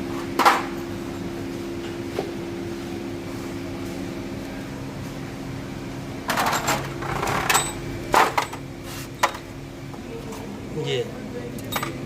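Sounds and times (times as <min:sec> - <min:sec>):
mechanical hum: 0:00.0 - 0:12.0
metal tools clattering: 0:06.3 - 0:08.6, 0:11.6 - 0:12.0.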